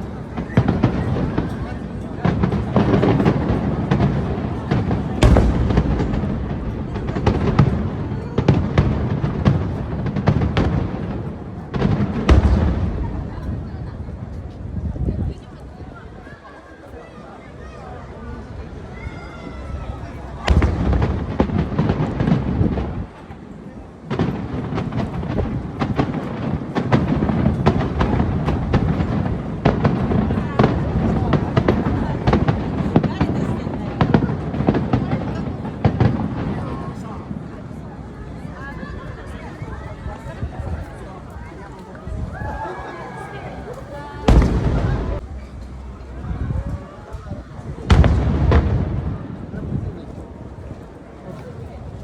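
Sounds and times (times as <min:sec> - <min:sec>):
fireworks bangs and crackles: 0:00.0 - 0:16.5, 0:18.3 - 0:52.0
low rumble: 0:05.2 - 0:08.2.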